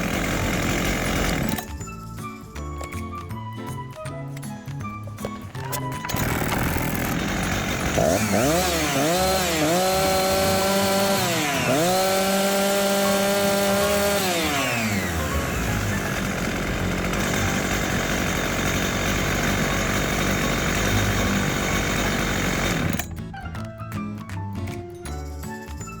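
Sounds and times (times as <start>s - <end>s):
chainsaw running at high revs: 0.0s - 1.9s, 6.0s - 23.2s.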